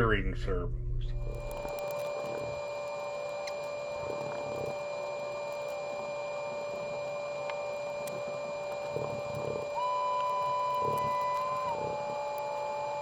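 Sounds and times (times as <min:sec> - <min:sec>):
high-pitched electrical hum: 0:00.0 - 0:13.0.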